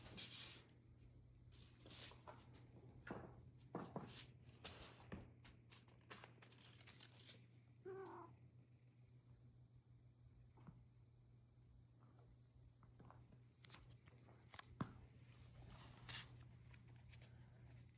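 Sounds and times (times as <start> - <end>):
cat meow: 7.8 - 8.4.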